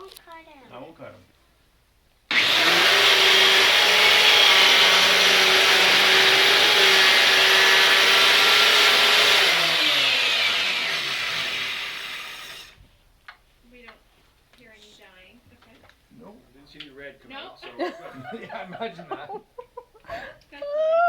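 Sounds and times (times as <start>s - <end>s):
power cutting tool running: 2.3s - 12.8s.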